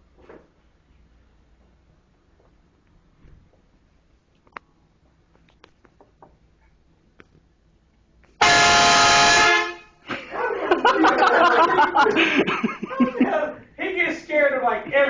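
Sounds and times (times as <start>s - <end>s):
train horn blast: 8.4s - 10.0s.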